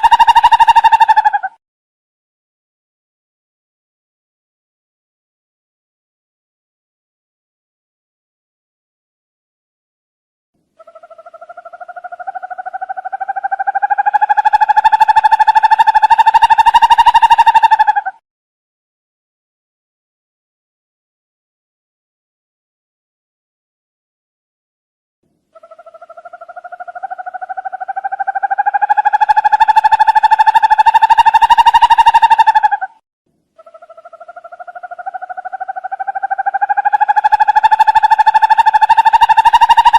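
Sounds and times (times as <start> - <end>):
owl rapid trill: 0.0 - 1.6, 10.8 - 18.2, 25.5 - 33.0, 33.6 - 39.9.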